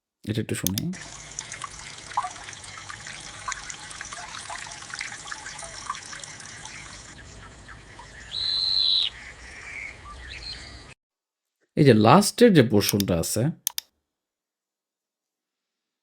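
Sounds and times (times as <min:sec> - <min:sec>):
water trickling with drips: 0:00.7 - 0:08.4
high bird chirp: 0:07.7 - 0:10.8.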